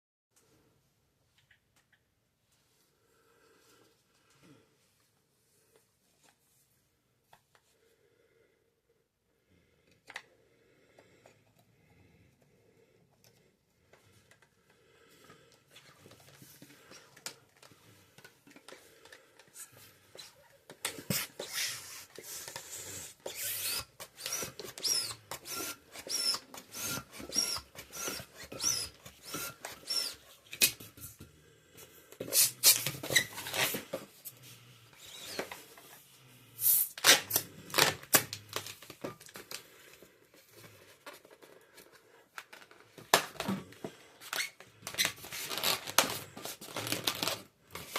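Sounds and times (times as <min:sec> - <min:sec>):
balloons rubbing and crinkling: 0:15.7 - 0:31.2, 0:31.9 - 0:47.9
rubber balloon squeaks: 0:20.1 - 0:30.7, 0:32.2 - 0:34.0, 0:34.9 - 0:35.8, 0:36.6 - 0:38.9, 0:44.2 - 0:47.4.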